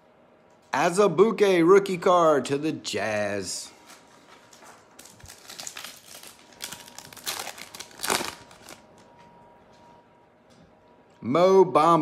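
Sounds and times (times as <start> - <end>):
plastic wrapper crinkling: 3.8 - 9.1.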